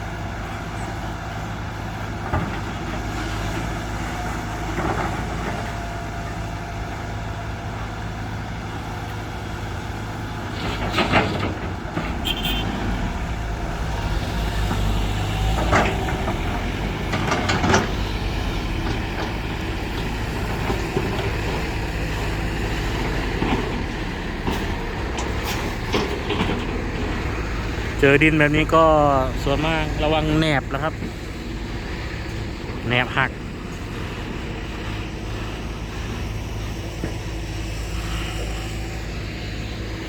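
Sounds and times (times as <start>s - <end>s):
diesel truck engine running: 0.0s - 40.0s.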